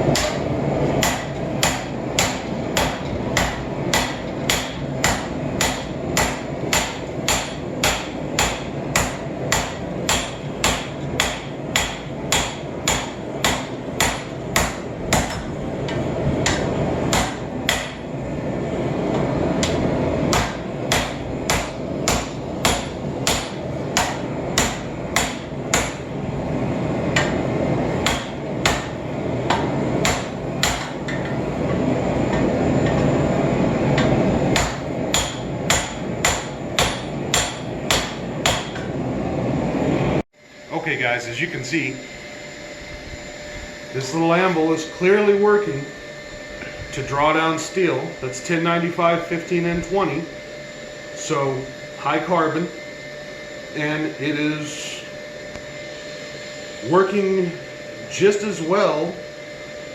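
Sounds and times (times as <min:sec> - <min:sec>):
hammer ringing on steel: 0:00.1 - 0:18.1, 0:19.6 - 0:26.1, 0:28.0 - 0:31.4, 0:34.0 - 0:38.9.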